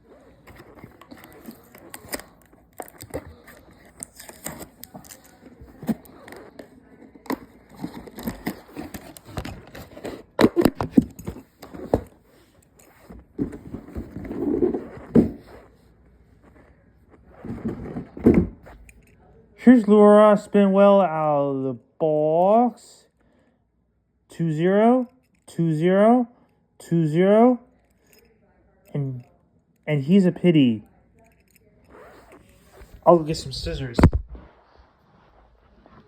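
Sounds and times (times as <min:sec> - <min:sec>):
scraping and rustling of packaging: 0:00.1 - 0:18.9.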